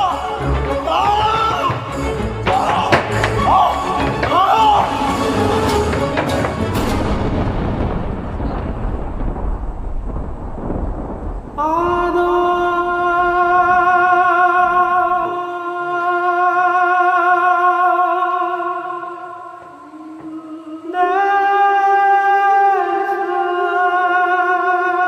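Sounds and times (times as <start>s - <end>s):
low rumble: 0.0s - 15.4s.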